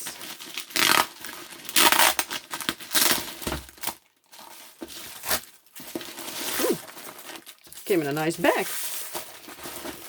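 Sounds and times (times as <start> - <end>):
bubble wrap crinkling: 0.0 - 10.0.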